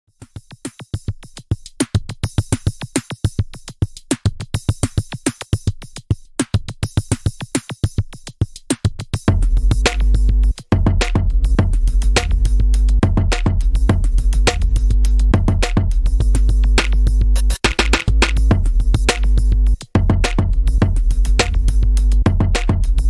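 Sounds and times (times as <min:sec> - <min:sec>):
drum-machine beat: 0:00.1 - 0:23.0
deep bass and synth chords: 0:09.3 - 0:23.0.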